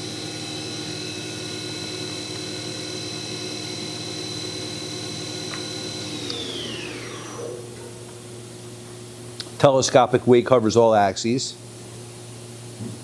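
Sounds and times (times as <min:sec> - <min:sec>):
machine spindle whine: 0:00.0 - 0:08.9.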